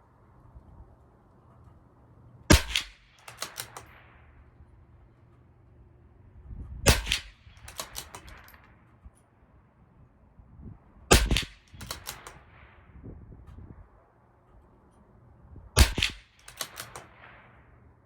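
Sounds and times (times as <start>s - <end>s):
rifle bolt clicking: 2.5s - 4.0s, 6.9s - 8.8s, 11.3s - 12.4s, 15.8s - 17.2s
rifle shots: 2.5s - 4.6s, 6.9s - 8.7s, 11.1s - 12.9s, 15.8s - 17.8s.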